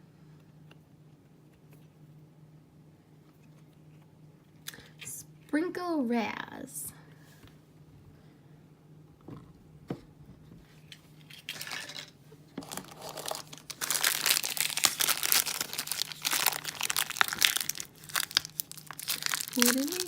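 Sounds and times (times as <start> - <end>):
plastic wrapper crinkling: 12.6 - 20.0.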